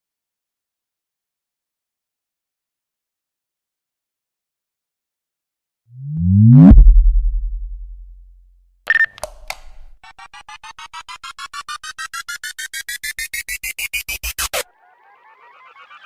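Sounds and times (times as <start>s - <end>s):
pulsing synth riser: 6.0s - 8.3s
sharp synth hits: 6.1s - 8.2s.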